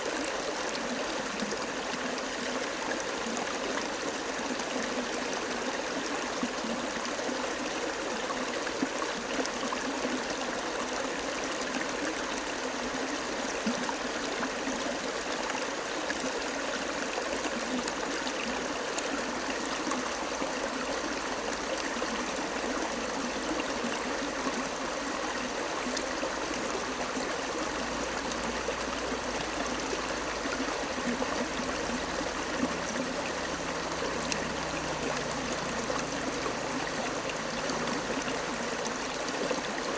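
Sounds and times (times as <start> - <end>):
water running and splashing: 11.1 - 39.9.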